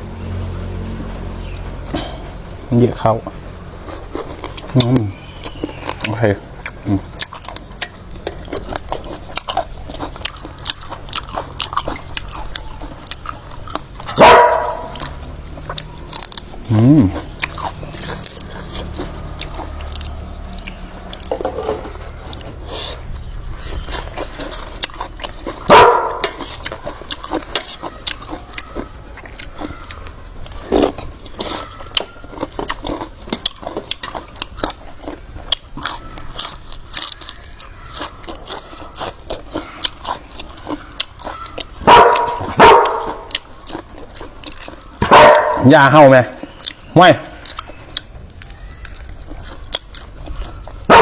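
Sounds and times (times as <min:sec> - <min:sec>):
dog barking: 0:14.1 - 0:15.1, 0:25.7 - 0:26.8, 0:41.2 - 0:43.4, 0:45.0 - 0:45.7.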